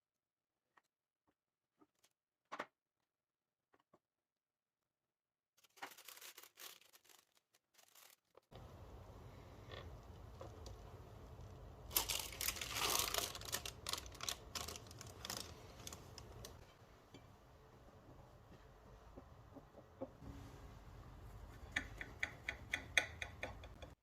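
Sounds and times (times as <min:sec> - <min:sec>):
packaging rustling and crinkling: 0:05.6 - 0:08.5, 0:11.8 - 0:16.6.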